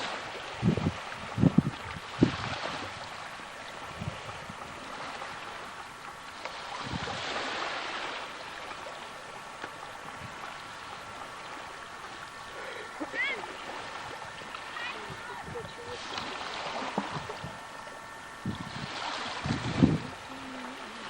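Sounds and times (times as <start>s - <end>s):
water rushing: 0.0s - 21.0s
wind noise: 0.4s - 3.2s, 3.9s - 4.8s, 6.8s - 7.6s, 13.6s - 20.4s
faint mechanical tone: 7.6s - 21.0s.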